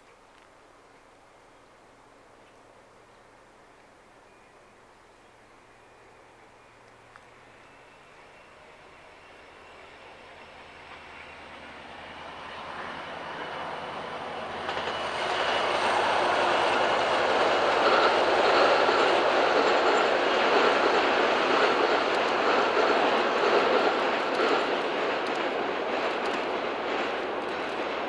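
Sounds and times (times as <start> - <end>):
train passing on rails: 3.6 - 28.0
rail clicks: 6.8 - 28.0.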